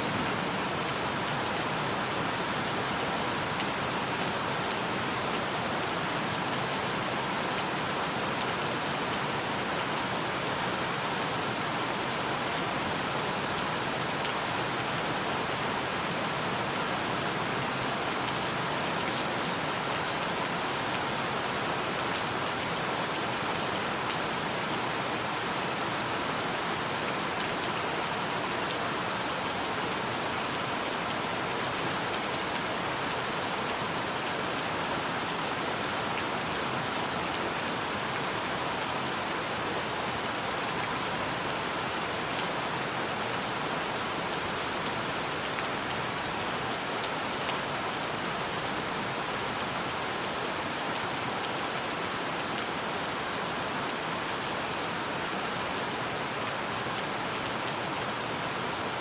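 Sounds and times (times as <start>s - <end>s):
steady rain hissing: 0.0s - 59.0s.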